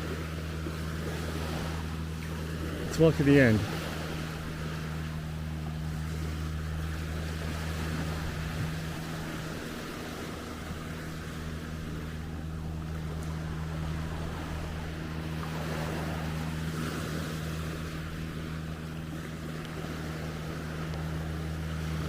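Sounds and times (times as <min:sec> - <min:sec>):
boat engine humming: 0:00.0 - 0:22.0
waves washing: 0:00.0 - 0:22.0.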